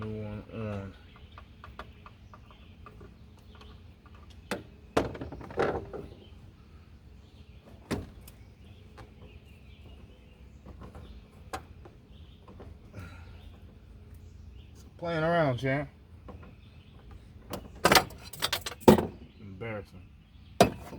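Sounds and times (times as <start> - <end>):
knocks and clunks of piping: 1.1 - 6.3, 16.2 - 19.4, 20.6 - 20.9.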